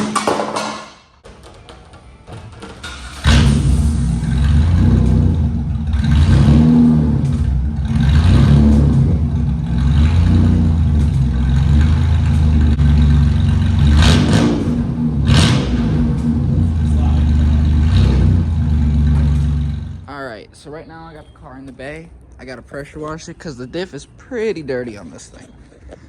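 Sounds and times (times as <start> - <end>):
car engine droning: 3.0 - 20.2.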